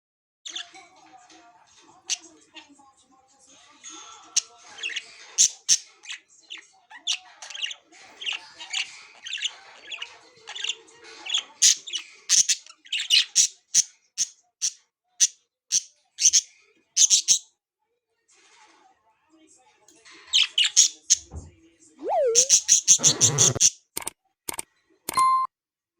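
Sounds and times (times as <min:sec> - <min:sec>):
budgerigars chirping and squawking: 0:04.4 - 0:14.3, 0:22.1 - 0:23.7.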